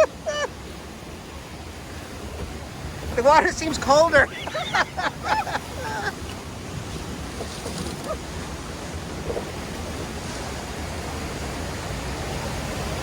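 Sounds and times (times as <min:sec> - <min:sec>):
rushing churning river water: 0:00.0 - 0:13.0
wind on microphone: 0:01.6 - 0:13.0.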